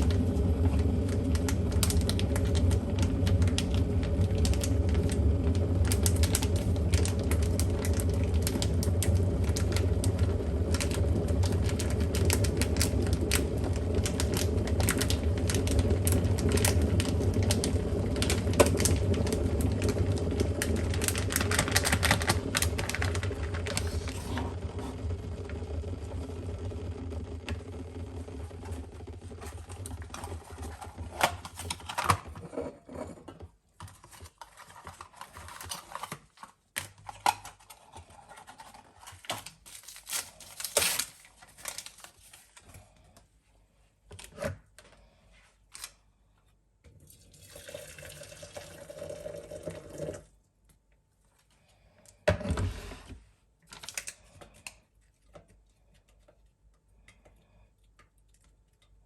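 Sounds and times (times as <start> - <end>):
running liquid: 47.0 - 50.3.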